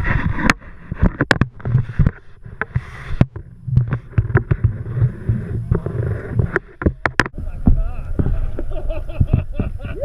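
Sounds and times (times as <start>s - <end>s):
boat low rumble: 0.0s - 10.0s
wind on microphone: 0.0s - 10.0s
sharp knocks and clicks: 0.3s - 7.4s.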